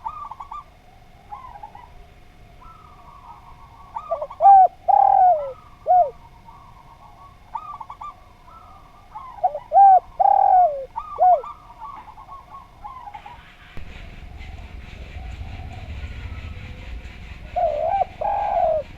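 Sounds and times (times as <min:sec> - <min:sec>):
dove cooing: 0:00.0 - 0:18.9
low rumbling noise: 0:13.5 - 0:18.9.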